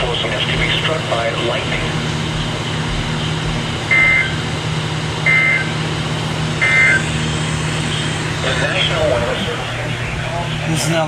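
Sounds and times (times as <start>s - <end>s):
radio hum and hiss: 0.0s - 11.0s
buzzy digital chirps: 3.9s - 4.5s, 5.2s - 10.3s.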